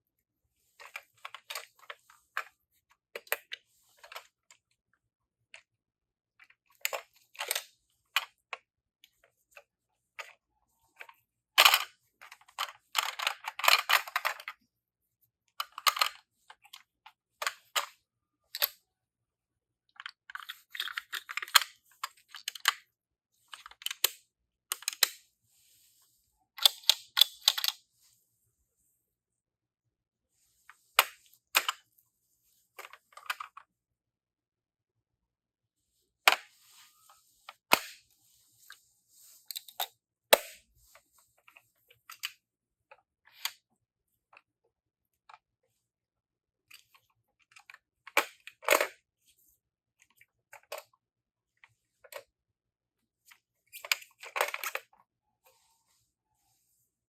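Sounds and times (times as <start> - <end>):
toy cars clicking and clattering: 11.6 - 14.6, 15.6 - 16.8, 20.0 - 25.2, 26.6 - 27.8.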